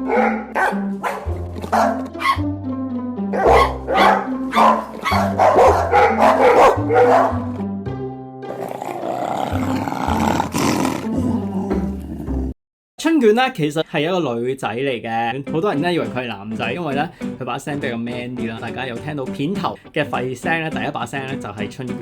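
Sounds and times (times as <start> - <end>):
dogs barking: 0.0 - 2.5, 3.3 - 7.6
music with stepping bass line: 0.0 - 8.0.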